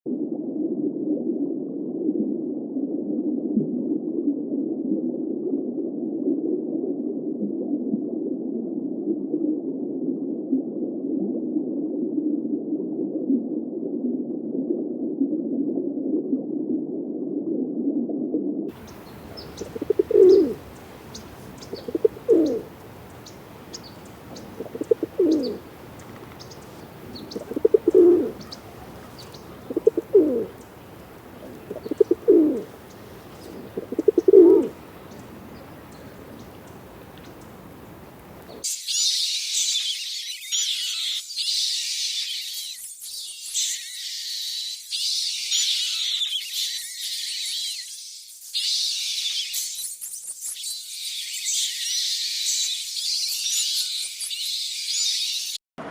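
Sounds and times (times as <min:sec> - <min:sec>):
dove cooing: 0:18.7 - 0:38.6
small birds chirping: 0:18.7 - 0:38.8.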